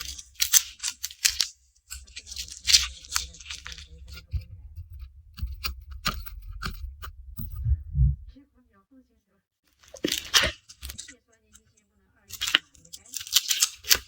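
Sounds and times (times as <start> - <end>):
garlic skins crackling: 0.0 - 7.3, 9.8 - 11.2, 12.3 - 14.0.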